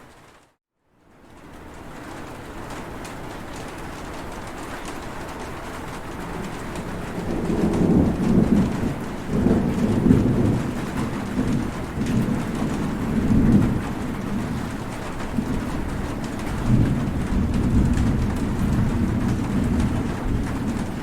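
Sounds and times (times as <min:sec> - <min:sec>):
heavy rain falling: 0:00.0 - 0:21.0
rolling thunder rumble: 0:02.0 - 0:21.0.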